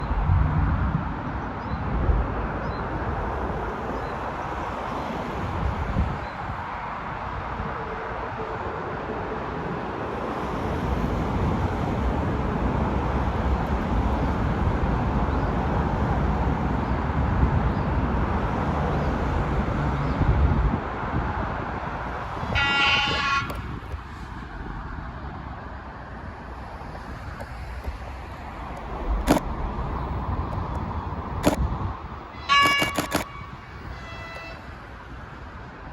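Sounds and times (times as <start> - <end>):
short high horn blast: 22.4 - 23.8, 32.3 - 34.8.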